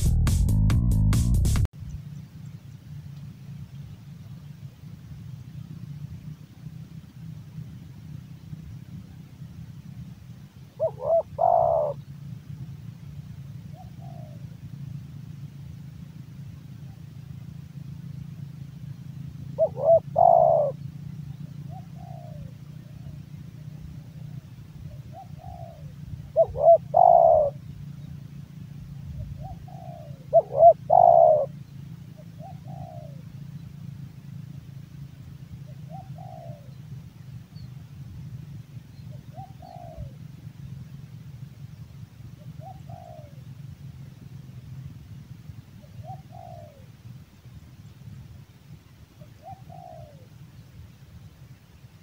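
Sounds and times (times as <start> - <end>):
low steady hum: 0.0 - 52.0
dove cooing: 10.0 - 15.4, 16.1 - 28.2, 28.8 - 34.0, 35.5 - 40.9, 42.1 - 47.2, 49.0 - 50.7.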